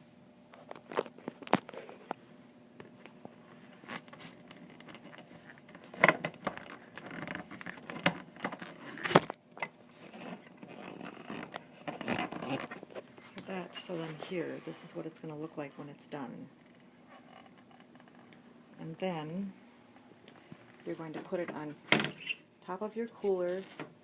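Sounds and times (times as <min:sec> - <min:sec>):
plastic parts scraping: 0:09.9 - 0:14.8.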